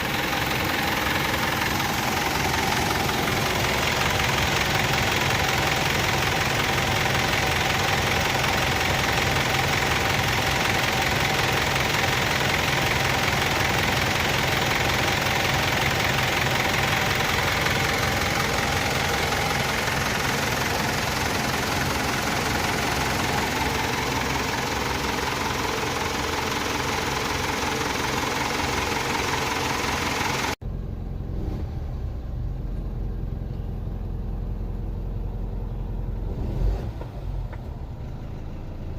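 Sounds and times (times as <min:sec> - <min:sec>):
diesel engine idling with clatter: 0:00.0 - 0:38.9
dull engine rumble: 0:00.0 - 0:38.9.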